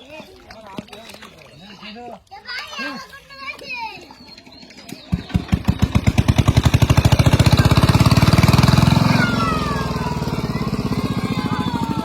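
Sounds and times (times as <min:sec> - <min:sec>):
small engine starting and idling: 0:04.9 - 0:12.0.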